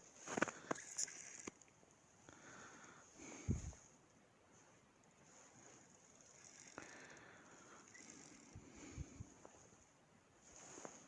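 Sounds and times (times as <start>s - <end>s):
faint rustling: 3.3s - 11.0s.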